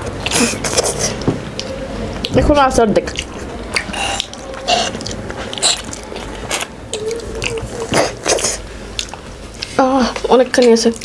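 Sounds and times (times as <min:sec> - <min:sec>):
closed-mouth hum: 0:00.0 - 0:10.3
wet chewing and lip-smacking: 0:00.0 - 0:11.0.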